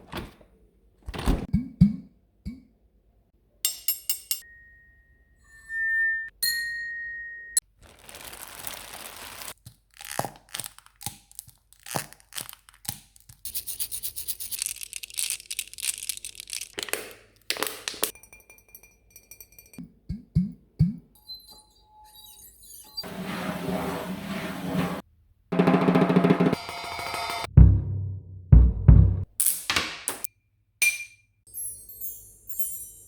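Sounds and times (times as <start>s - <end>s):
steady high tone: 4.4s - 7.6s
tearing crumpling noise: 7.7s - 13.5s, 14.3s - 18.1s.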